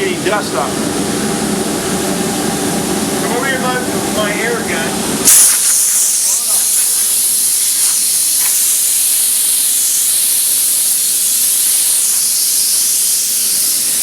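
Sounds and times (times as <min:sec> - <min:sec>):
air blow gun hissing: 0:02.9 - 0:14.0.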